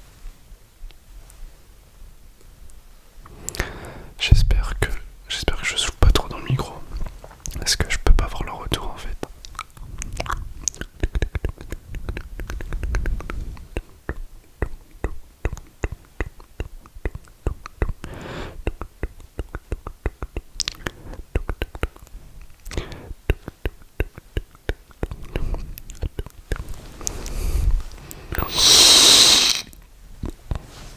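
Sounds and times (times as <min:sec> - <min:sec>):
wet mouth clicks and lip smacks: 0:09.2 - 0:27.4
breathy exhales: 0:27.3 - 0:29.7.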